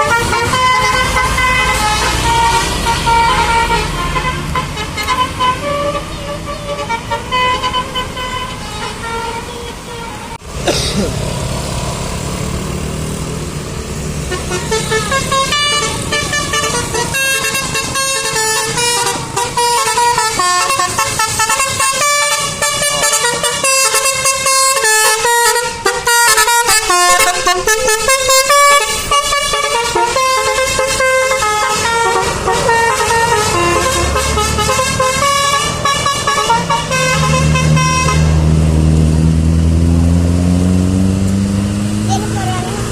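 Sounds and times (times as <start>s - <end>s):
bus air horn tune: 0.0s - 11.0s, 14.2s - 38.6s.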